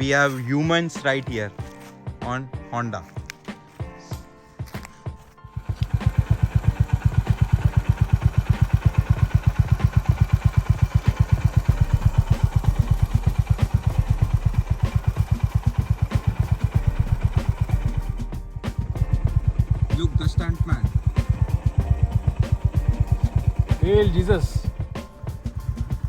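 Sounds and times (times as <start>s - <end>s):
single-cylinder motorcycle engine: 5.6s - 18.2s, 18.9s - 26.0s.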